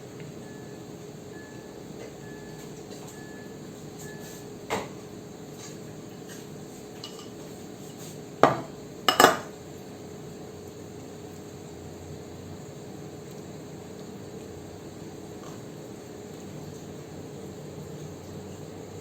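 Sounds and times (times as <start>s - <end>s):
dishes and cutlery clinking: 5.5s - 7.5s, 8.4s - 9.5s.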